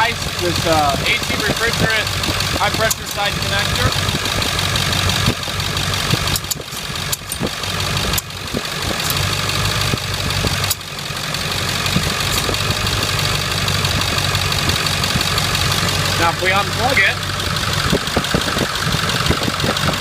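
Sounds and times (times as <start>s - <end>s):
car engine idling: 0.0s - 20.0s
sharp clicks: 6.3s - 7.5s.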